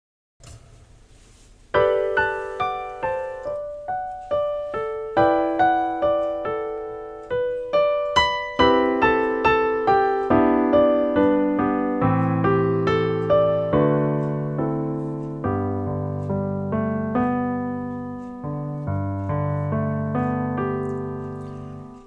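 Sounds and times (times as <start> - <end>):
faint hiss: 0.4 - 14.5
piano melody over chords: 1.7 - 22.0.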